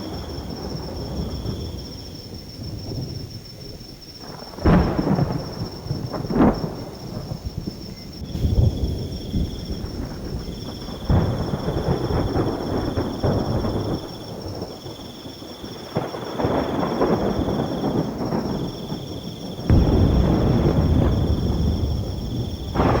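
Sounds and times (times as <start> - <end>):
crickets trilling: 0.0 - 23.0
rain: 0.0 - 23.0
thunder rumbling: 0.0 - 23.0.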